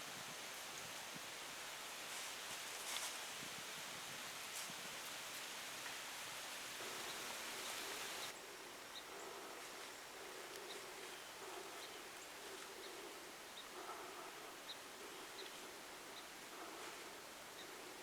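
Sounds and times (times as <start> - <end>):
faint hiss: 0.0 - 8.7.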